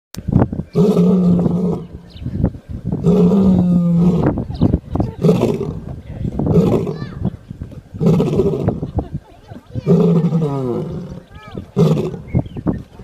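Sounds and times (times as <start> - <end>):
lion snoring: 3.0 - 4.4, 9.9 - 12.4.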